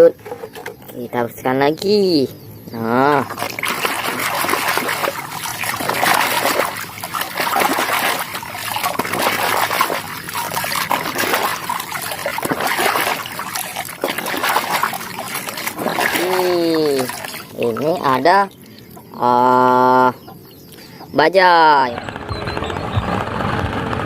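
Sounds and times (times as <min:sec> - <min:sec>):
water splashing and trickling: 0:02.8 - 0:21.9.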